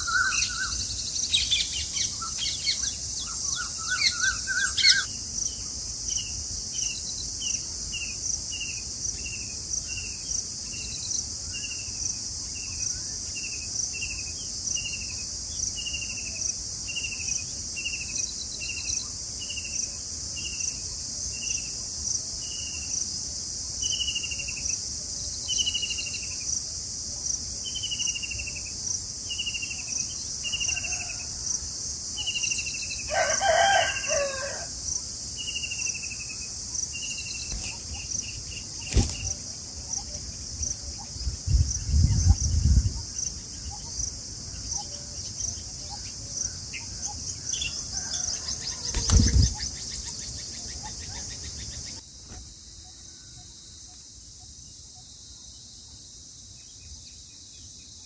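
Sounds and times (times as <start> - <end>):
pulsing insect buzz: 36.1 - 42.5, 48.4 - 52.6.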